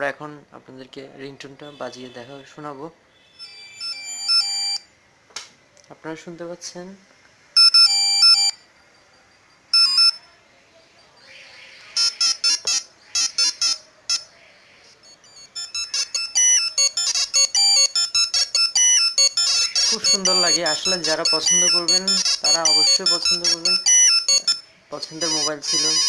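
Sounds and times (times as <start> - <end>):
monophonic ringtone beeping tunes: 3.2 - 4.9, 7.6 - 8.7, 9.7 - 10.3, 11.2 - 14.3, 14.9 - 26.0.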